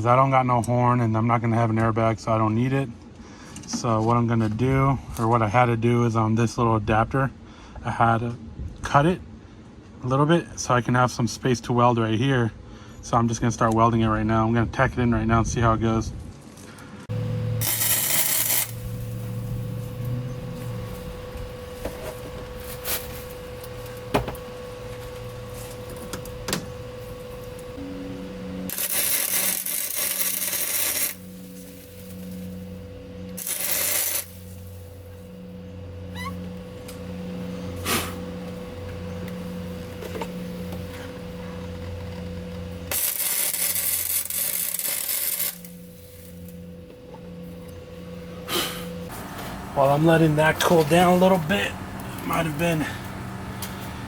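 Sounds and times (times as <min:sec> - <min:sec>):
welder humming: 0:17.0 - 0:54.0
sharp welding bursts: 0:17.1 - 0:20.1, 0:28.7 - 0:32.6, 0:33.4 - 0:35.1, 0:42.9 - 0:46.5.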